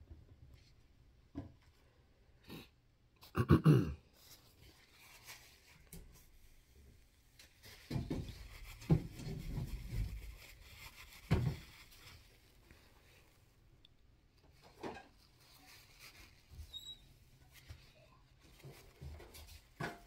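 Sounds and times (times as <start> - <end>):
rubbing: 7.4 - 13.3, 14.5 - 19.9.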